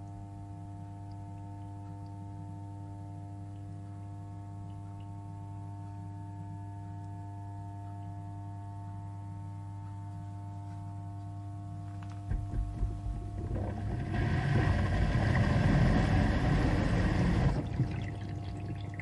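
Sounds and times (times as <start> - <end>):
dishwasher motor hum: 11.9 - 19.0.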